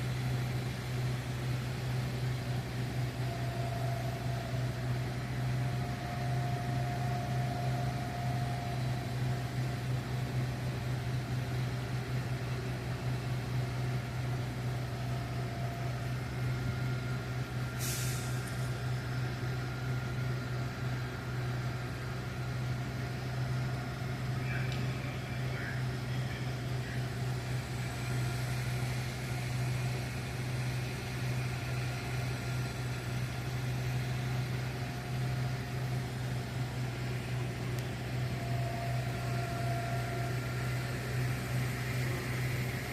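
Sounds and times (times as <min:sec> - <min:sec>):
truck engine idling: 0:00.0 - 0:42.9
short hiss: 0:17.8 - 0:18.8.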